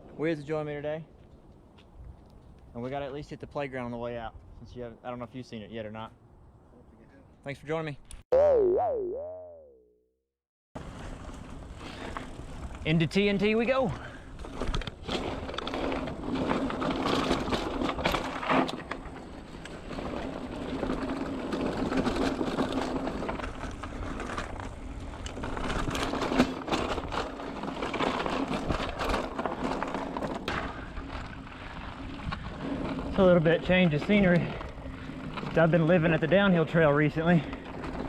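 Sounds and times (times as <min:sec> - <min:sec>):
bike tyres rattling over dirt: 0:10.8 - 0:38.0.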